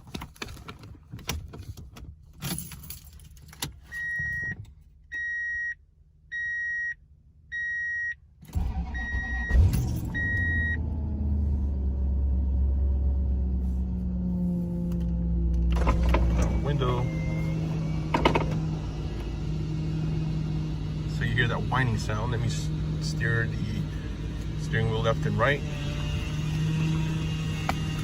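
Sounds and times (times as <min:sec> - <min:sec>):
keys jangling: 0:02.3 - 0:03.9
engine cranking and starting: 0:08.4 - 0:13.1, 0:14.8 - 0:19.4
engine idling with a whine: 0:08.5 - 0:28.0
warning chime beeping: 0:16.4 - 0:18.1.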